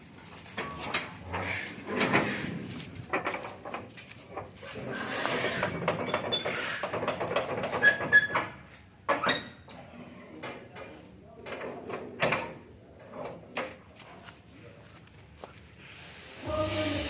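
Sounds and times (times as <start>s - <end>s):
metal knocks and scraping: 0.4s - 9.7s.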